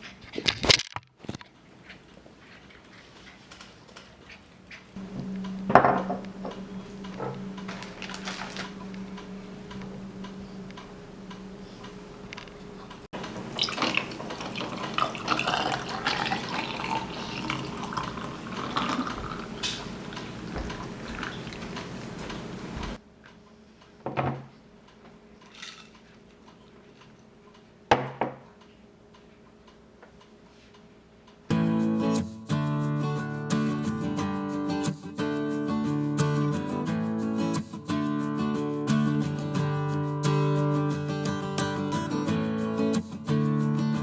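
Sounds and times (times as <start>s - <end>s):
dishes clinking: 5.7s - 6.6s
water running in sink: 13.2s - 23.0s.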